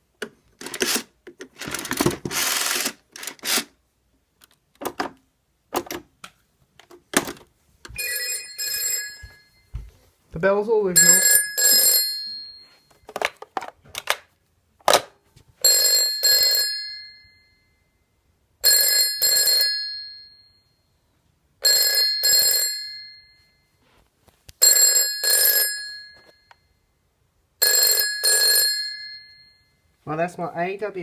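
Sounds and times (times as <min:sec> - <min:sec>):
telephone bell ringing: 0:08.0 - 0:09.7, 0:11.0 - 0:13.0, 0:15.6 - 0:18.0, 0:18.6 - 0:20.8, 0:21.6 - 0:23.8, 0:24.6 - 0:26.7, 0:27.6 - 0:29.9.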